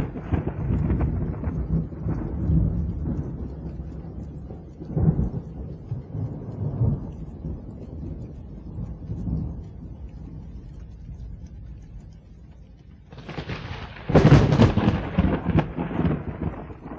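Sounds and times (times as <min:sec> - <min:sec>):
rolling thunder: 0:00.0 - 0:11.9, 0:13.0 - 0:16.9
faint rain: 0:00.0 - 0:16.9
thunder clap: 0:00.0 - 0:16.9.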